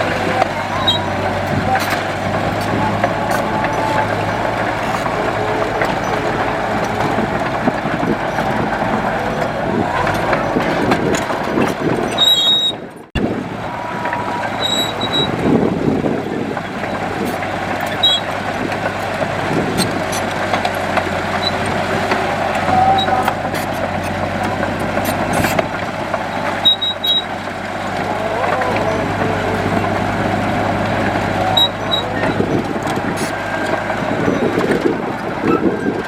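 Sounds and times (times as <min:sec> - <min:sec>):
heavy machinery running: 0:00.0 - 0:36.0
short high squeaks: 0:00.7 - 0:01.2, 0:12.1 - 0:12.8, 0:14.1 - 0:15.4, 0:17.8 - 0:18.3, 0:26.3 - 0:27.4.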